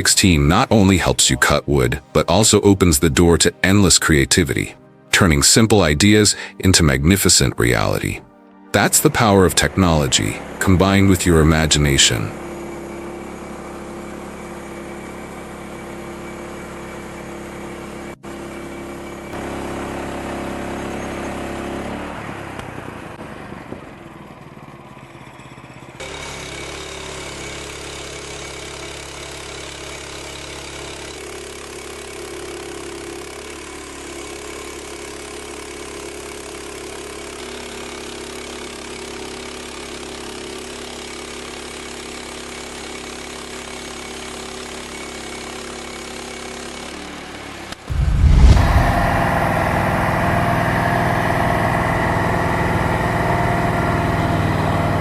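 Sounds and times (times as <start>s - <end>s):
machine engine running: 9.1s - 11.0s, 11.6s - 32.1s, 47.9s - 55.0s.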